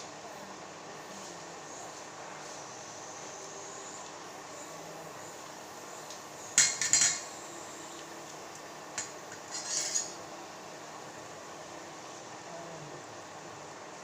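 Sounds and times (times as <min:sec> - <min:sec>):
steady hiss: 0:00.0 - 0:14.0
metal utensil scraping cookware: 0:09.0 - 0:10.2.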